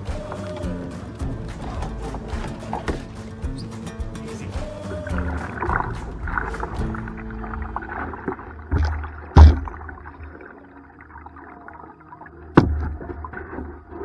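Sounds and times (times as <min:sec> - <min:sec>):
paddle splashing water: 0:00.0 - 0:14.0
sharp knocks on kayak: 0:01.6 - 0:03.2, 0:08.7 - 0:10.0, 0:12.6 - 0:13.2
low rumble: 0:05.1 - 0:10.4.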